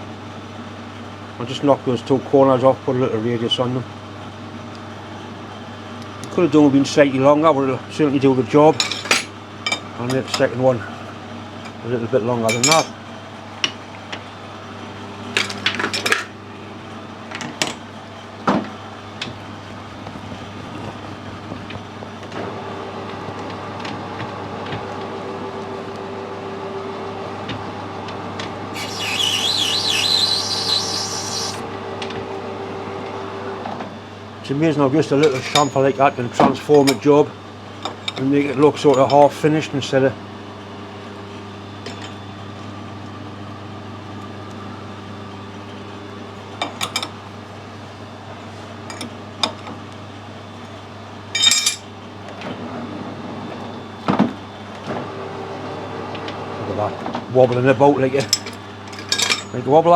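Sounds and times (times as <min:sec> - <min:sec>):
low machine hum: 0:00.0 - 0:59.9
metal lathe running: 0:25.0 - 0:33.6
lathe tool squealing on brass: 0:28.7 - 0:31.6.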